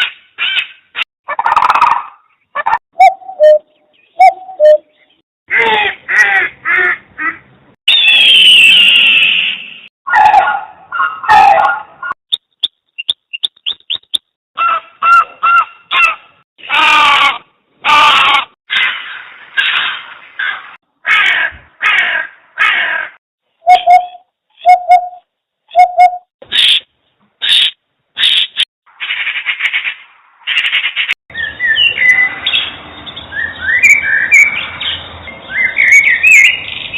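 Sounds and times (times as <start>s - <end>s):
bird singing whistled notes: 3.0s - 5.2s, 23.6s - 26.3s, 31.3s - 36.9s.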